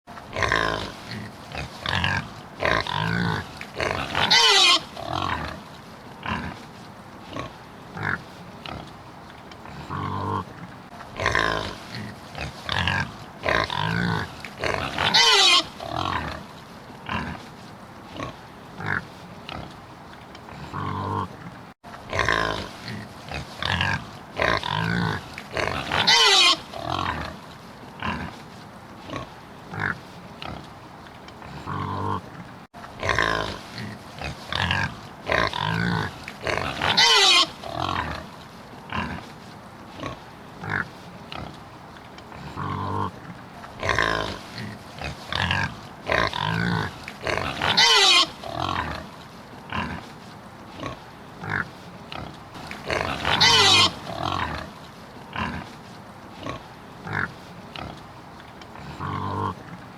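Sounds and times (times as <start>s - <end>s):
pig grunting and oinking: 0.2s - 5.6s, 6.2s - 9.0s, 9.6s - 17.5s, 18.1s - 19.8s, 20.4s - 27.4s, 28.0s - 28.4s, 29.0s - 30.8s, 31.4s - 39.3s, 40.0s - 41.6s, 42.2s - 50.1s, 50.8s - 55.8s, 56.4s - 59.9s
pig squealing: 1.9s - 5.6s, 12.8s - 16.4s, 23.7s - 27.3s, 35.3s - 38.2s, 46.1s - 49.0s, 52.8s - 54.6s.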